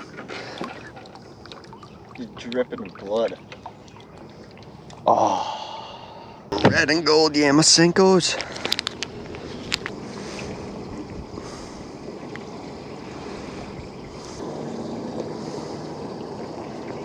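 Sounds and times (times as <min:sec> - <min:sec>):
wind and water noise: 0:00.0 - 0:17.0
low motor hum: 0:09.0 - 0:17.0.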